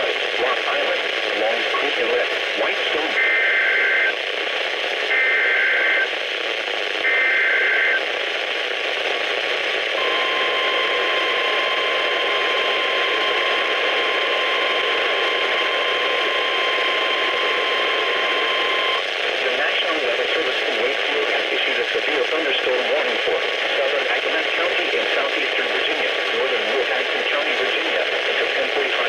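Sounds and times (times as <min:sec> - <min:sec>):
radio static hiss: 0:00.0 - 0:29.0
steady warning alarm tone: 0:10.0 - 0:19.0.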